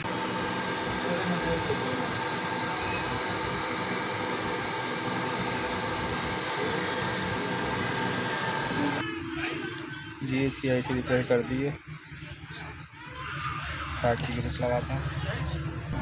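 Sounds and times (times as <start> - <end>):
fan whine: 0.0 - 9.0
hot-air gun hissing: 0.0 - 9.0.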